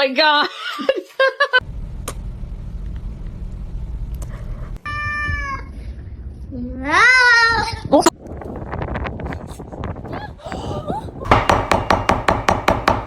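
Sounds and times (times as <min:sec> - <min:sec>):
steady low rumble: 0:01.6 - 0:11.4.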